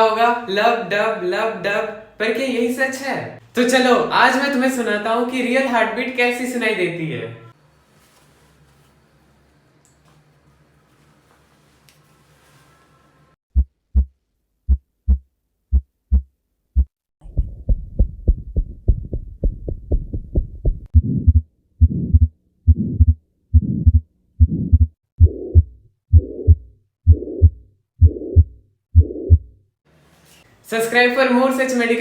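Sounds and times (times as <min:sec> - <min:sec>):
heartbeat through stethoscope: 0:13.5 - 0:29.6
heart murmur rushing: 0:16.8 - 0:29.5.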